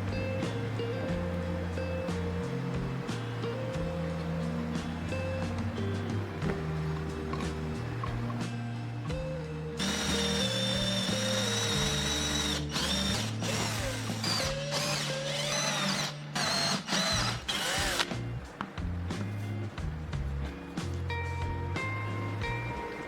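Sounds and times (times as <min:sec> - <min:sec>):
small power tool motor whining: 0:00.0 - 0:18.2
background music: 0:00.0 - 0:23.0.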